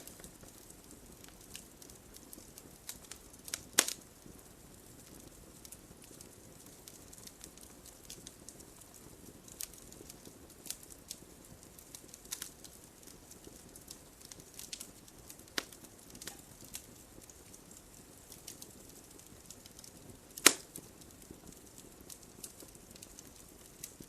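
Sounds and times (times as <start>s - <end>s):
soft steady hiss: 0.0s - 24.0s
wood fire crackling: 0.0s - 24.0s
logs popping and snapping: 20.4s - 20.9s.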